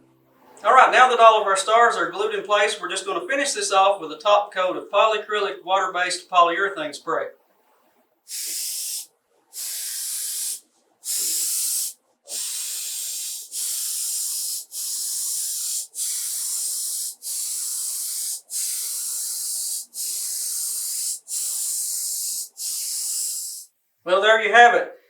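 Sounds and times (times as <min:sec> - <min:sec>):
aerosol can spraying: 0:08.3 - 0:23.7.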